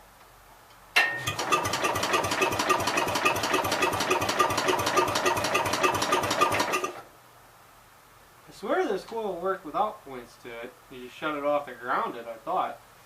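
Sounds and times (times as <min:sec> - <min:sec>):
engine cranking by starter: 0:01.0 - 0:07.0.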